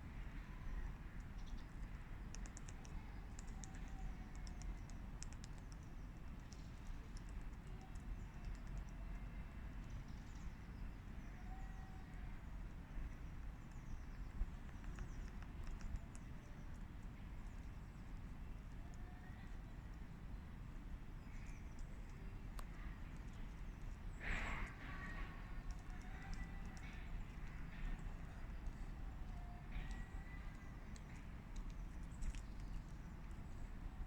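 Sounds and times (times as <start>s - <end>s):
low outdoor rumble: 0.0s - 34.0s
woodpecker pecking taps: 14.5s - 16.3s.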